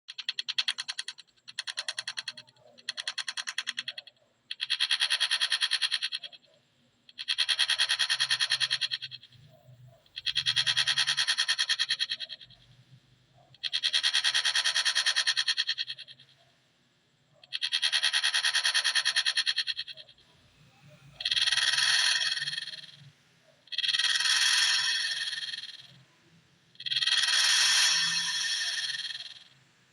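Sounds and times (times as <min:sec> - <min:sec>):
sped-up clock ticking buzz: 0:00.1 - 0:06.4, 0:07.1 - 0:12.7, 0:13.5 - 0:16.2, 0:17.5 - 0:29.7.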